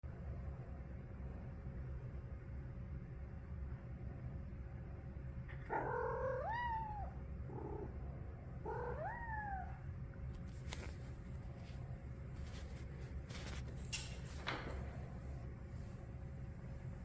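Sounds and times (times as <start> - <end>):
cat calling: 5.6 - 8.0, 8.6 - 9.9.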